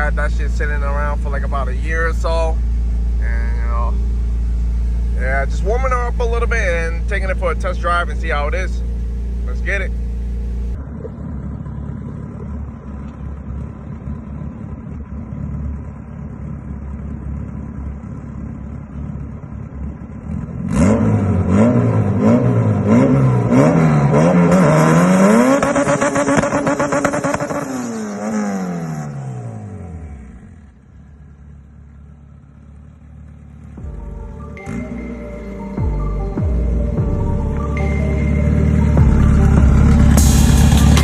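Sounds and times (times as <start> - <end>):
car engine accelerating through gears: 20.1 - 30.8, 33.3 - 41.0.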